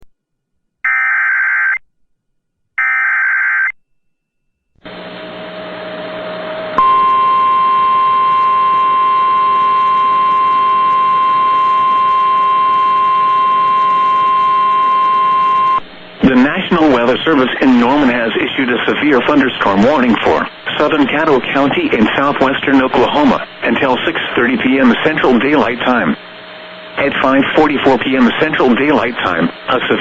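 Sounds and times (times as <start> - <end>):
steady warning alarm tone: 6.8 - 18.4
harsh data bursts: 10.8 - 26.2
radio hiss: 11.2 - 30.0.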